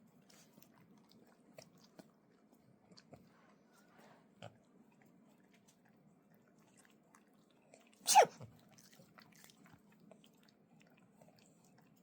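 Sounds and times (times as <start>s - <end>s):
person fake sneezing: 8.1s - 8.4s.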